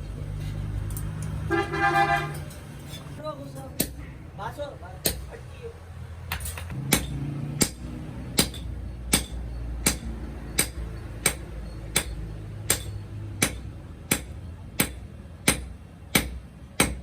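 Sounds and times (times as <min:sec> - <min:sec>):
hammer striking metal: 0:03.8 - 0:04.1, 0:06.3 - 0:17.0.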